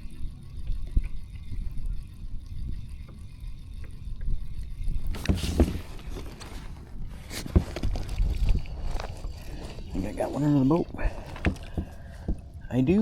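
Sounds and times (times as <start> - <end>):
knocks in a kayak: 11.1 - 12.5.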